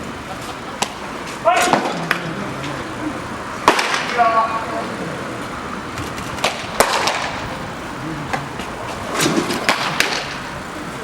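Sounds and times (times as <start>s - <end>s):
baseballs smacking into leather mitts: 3.6s - 4.2s, 6.0s - 7.4s, 8.3s - 10.4s.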